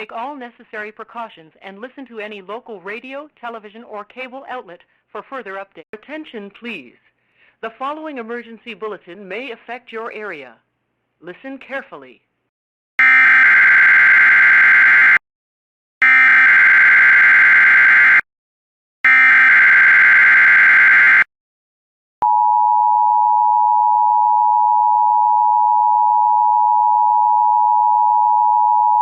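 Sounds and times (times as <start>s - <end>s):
steady alarm tone: 13.0s - 15.2s, 16.0s - 18.2s, 19.0s - 21.3s.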